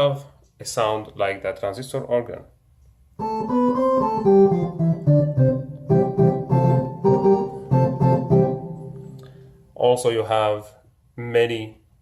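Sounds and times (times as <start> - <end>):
synthesizer organ chords and notes: 3.2 - 9.5.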